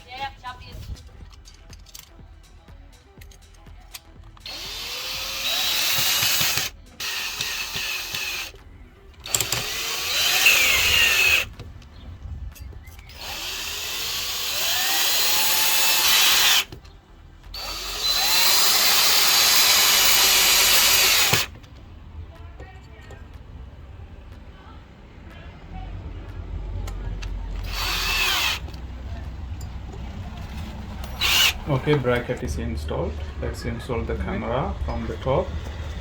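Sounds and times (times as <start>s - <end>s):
power drill running: 4.4s - 8.6s, 9.2s - 11.6s, 13.1s - 16.8s, 17.5s - 21.6s, 27.5s - 28.8s, 30.5s - 32.0s.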